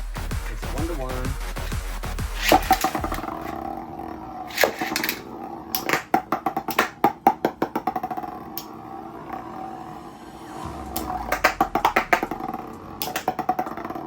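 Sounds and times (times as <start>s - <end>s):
spinning tops whirring: 0.0s - 14.0s
spinning tops clashing clacks: 1.6s - 3.5s, 4.5s - 8.6s, 11.0s - 14.0s.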